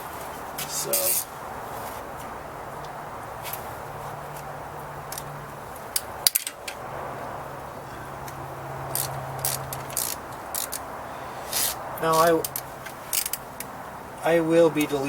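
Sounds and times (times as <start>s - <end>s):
metallic clicks of hand tools: 5.9s - 6.8s, 9.0s - 10.8s.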